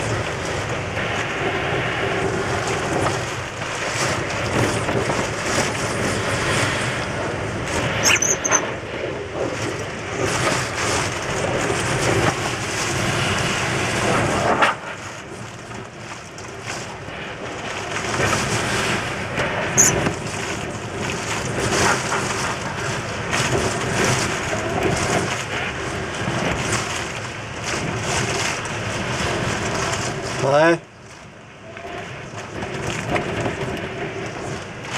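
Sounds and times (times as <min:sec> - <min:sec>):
wind buffeting microphone: 0:00.0 - 0:34.9
high squeaks: 0:08.0 - 0:08.6, 0:19.8 - 0:20.0.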